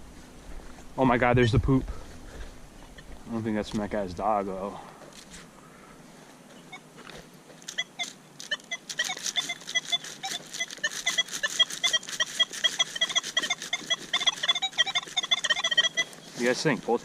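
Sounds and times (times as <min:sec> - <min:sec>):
metal detector beeps: 0:07.7 - 0:16.8.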